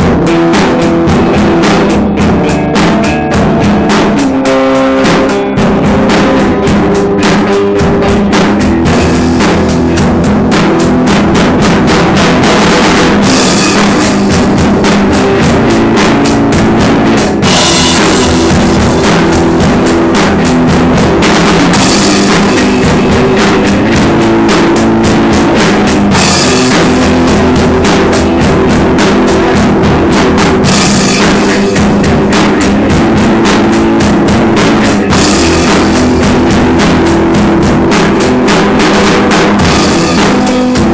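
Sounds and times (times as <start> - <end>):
loud rock music: 0.0 - 40.9.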